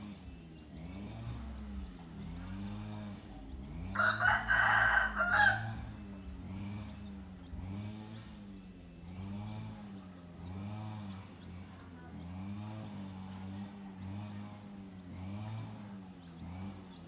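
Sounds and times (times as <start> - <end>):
rooster crowing: 3.9 - 6.5.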